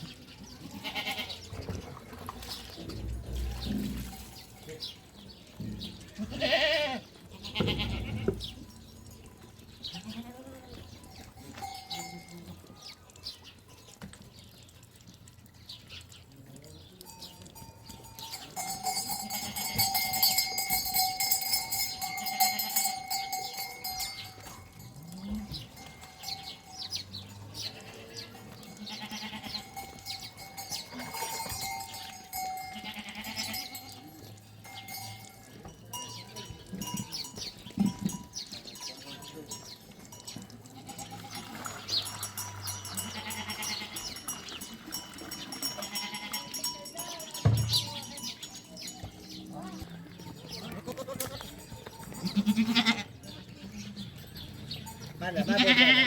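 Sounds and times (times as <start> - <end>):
animal bleating: 0.6 - 1.5, 6.1 - 8.5, 9.8 - 10.8, 27.6 - 29.9, 32.6 - 34.1, 43.0 - 44.1, 45.8 - 46.5, 50.6 - 51.5, 52.2 - 53.9, 55.3 - 56.0
livestock bells clanking: 2.5 - 14.4, 16.8 - 56.0.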